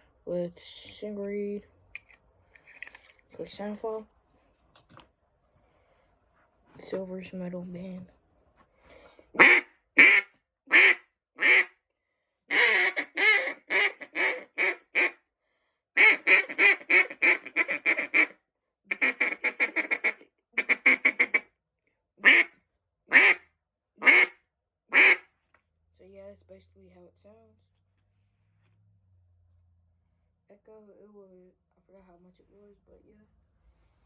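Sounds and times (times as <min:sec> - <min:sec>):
duck call quacks: 0:09.4 - 0:11.7, 0:12.5 - 0:15.2, 0:16.0 - 0:21.5, 0:22.2 - 0:22.5, 0:23.1 - 0:23.4, 0:24.0 - 0:25.3.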